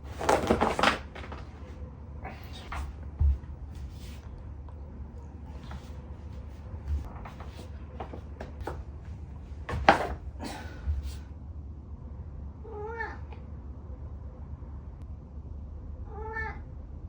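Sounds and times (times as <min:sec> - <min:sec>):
cat meowing: 0:12.7 - 0:13.4, 0:16.1 - 0:16.7.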